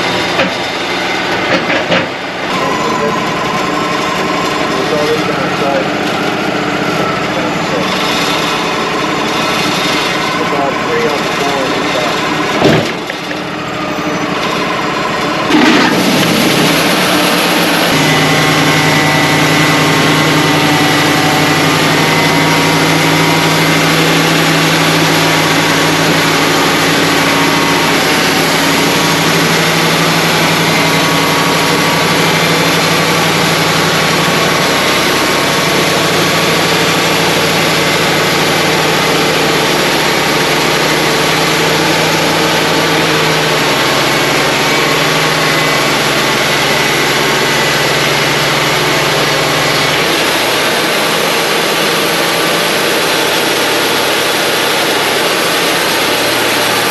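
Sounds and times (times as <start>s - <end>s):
band sawmill cutting log: 0.0s - 56.9s.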